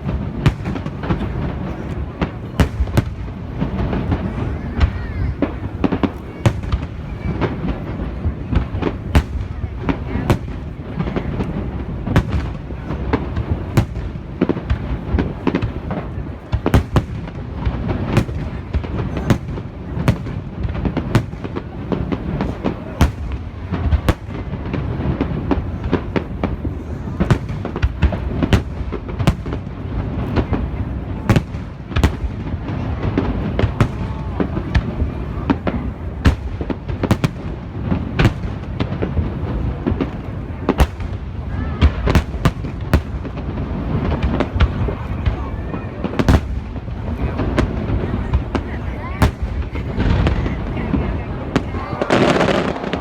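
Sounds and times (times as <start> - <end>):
low rumble of explosions: 0.0 - 53.0.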